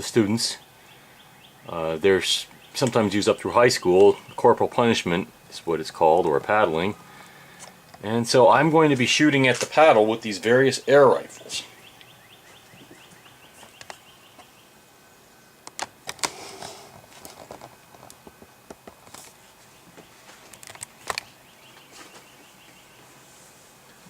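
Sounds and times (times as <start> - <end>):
footsteps and handling knocks: 12.4 - 14.5.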